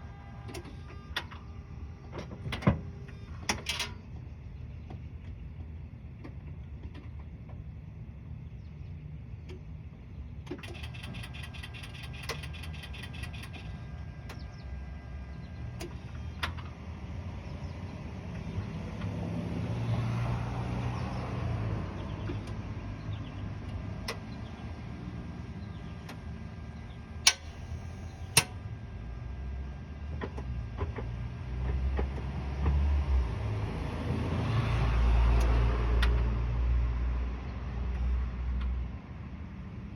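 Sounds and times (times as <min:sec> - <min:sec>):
low engine rumbling: 0:00.0 - 0:39.9
sharp clicks: 0:10.5 - 0:14.4, 0:27.3 - 0:28.6.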